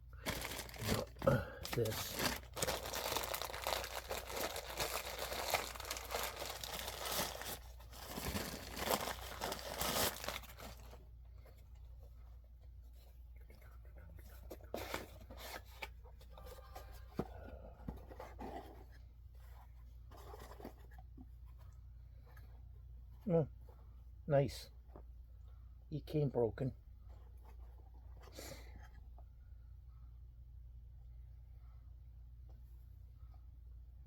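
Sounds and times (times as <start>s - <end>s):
packaging torn and crinkled: 0.2s - 10.8s.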